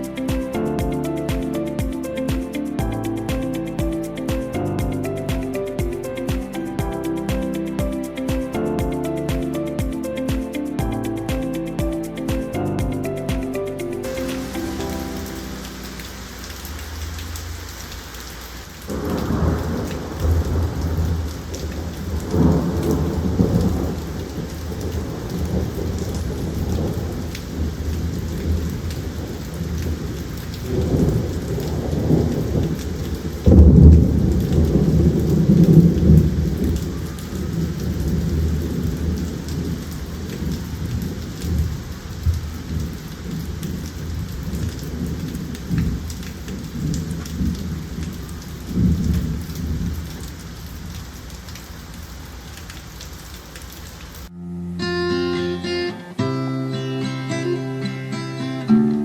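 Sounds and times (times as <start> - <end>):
steady rain: 0.0 - 54.4
thunder rumbling: 18.8 - 50.2.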